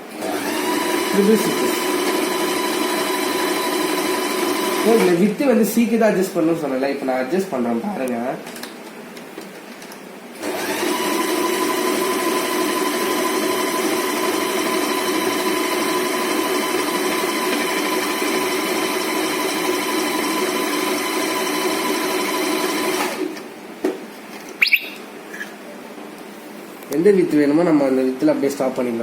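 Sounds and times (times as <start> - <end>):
sewing machine running: 0.2 - 5.1, 10.4 - 23.4.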